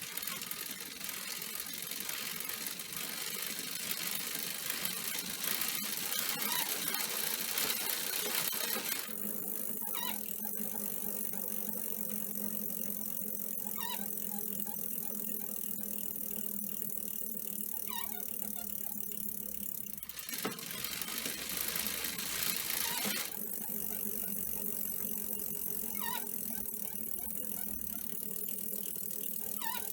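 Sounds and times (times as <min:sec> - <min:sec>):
squeak falling in pitch: 0:09.8 - 0:10.3, 0:13.6 - 0:15.2, 0:17.7 - 0:18.8, 0:25.9 - 0:27.0, 0:29.5 - 0:29.9.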